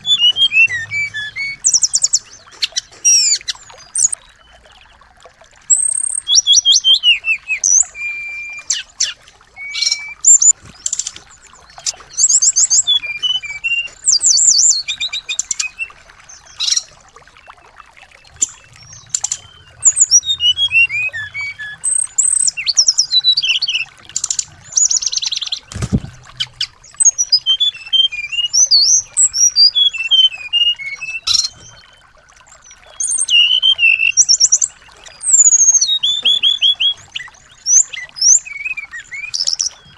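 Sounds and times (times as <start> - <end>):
songbirds chirping and trilling: 0.0 - 39.9
low thump: 25.7 - 26.4.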